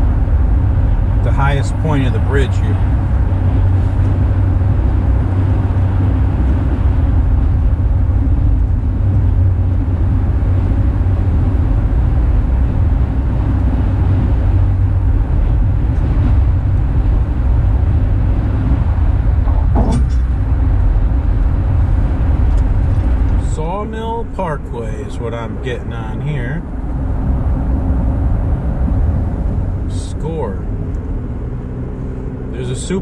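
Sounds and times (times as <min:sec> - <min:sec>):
car engine and tyre noise: 0:00.0 - 0:33.0.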